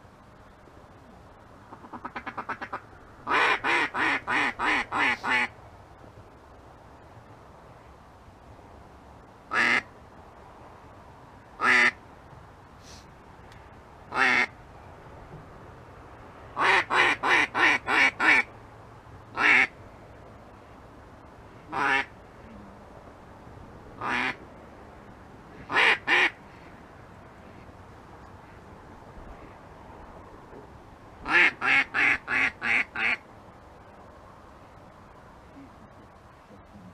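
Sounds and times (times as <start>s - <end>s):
duck quacking: 1.7s - 5.5s, 21.7s - 22.1s, 24.0s - 24.4s, 25.7s - 26.4s, 31.2s - 33.2s.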